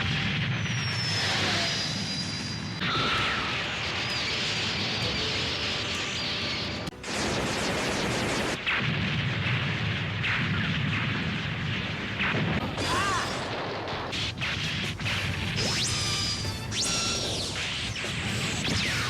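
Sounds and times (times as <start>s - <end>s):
whistling glides: 0.6s - 6.6s
rumbling explosion blasts: 7.0s - 19.0s.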